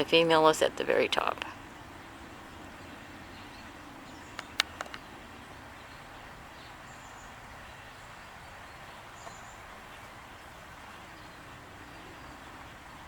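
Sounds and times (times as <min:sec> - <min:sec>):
faint outdoor background noise: 0:00.0 - 0:13.0
sharp clicks: 0:04.3 - 0:05.0.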